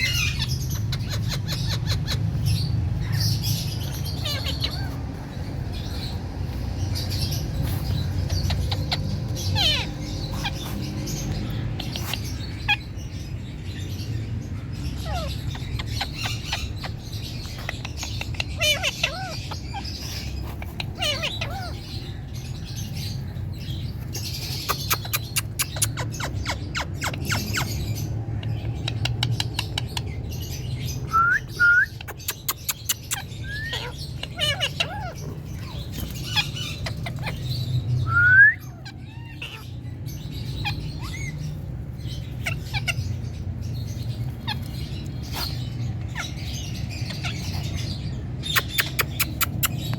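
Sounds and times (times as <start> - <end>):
parrot chirping and whistling: 31.0 - 32.1, 38.0 - 39.5.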